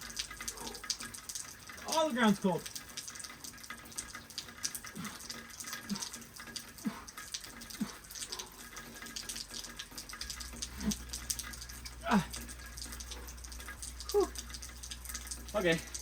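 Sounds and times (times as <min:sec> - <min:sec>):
rain patter: 0:00.0 - 0:16.0
man grunting exhales: 0:12.0 - 0:12.4.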